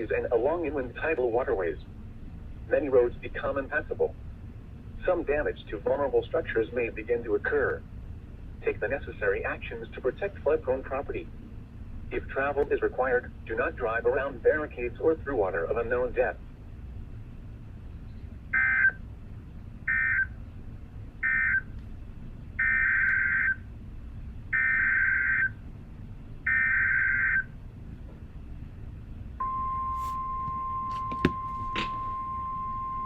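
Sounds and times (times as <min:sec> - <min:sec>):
steady warning alarm tone: 0:18.5 - 0:19.0, 0:19.9 - 0:20.3, 0:21.2 - 0:21.7, 0:22.6 - 0:23.6, 0:24.5 - 0:25.6, 0:26.4 - 0:27.5, 0:29.4 - 0:33.0.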